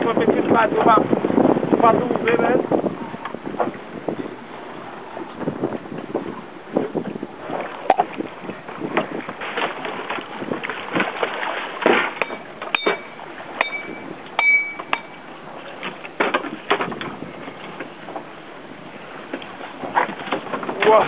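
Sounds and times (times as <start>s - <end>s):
boat noise: 0.0s - 21.0s
wind: 0.0s - 21.0s
knocks and thumps on boat deck: 0.1s - 21.0s
ringing metallic clinks: 12.2s - 15.2s.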